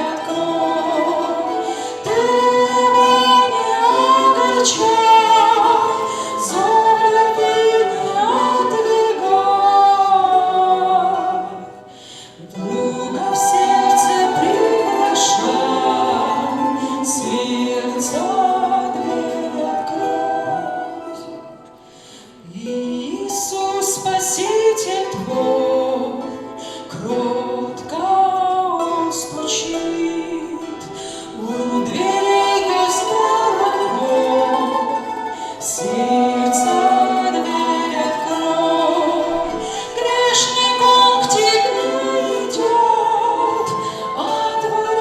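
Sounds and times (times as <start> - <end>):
voices singing a hymn in harmony: 0.0 - 45.0.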